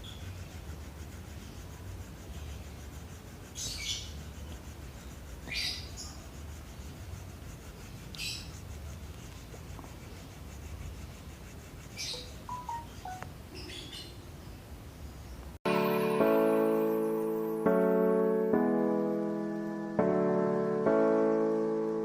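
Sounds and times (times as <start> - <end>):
sandpaper scraping coconut shell: 0.0 - 12.8.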